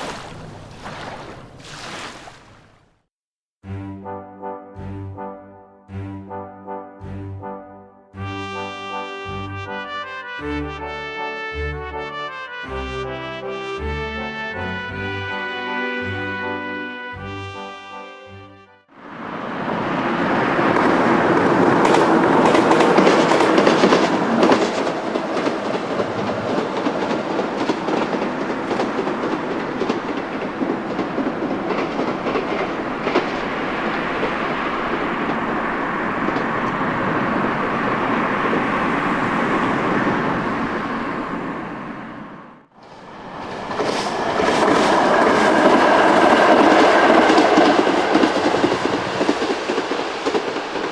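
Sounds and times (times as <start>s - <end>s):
electric train running past: 19.0s - 50.9s
wheels clicking over rail joints: 20.2s - 37.6s, 42.8s - 50.9s.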